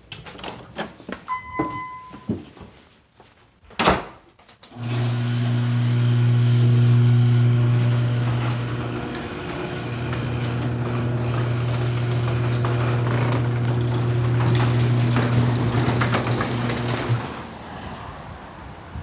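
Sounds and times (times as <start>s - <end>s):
machine motor humming: 4.8s - 17.5s.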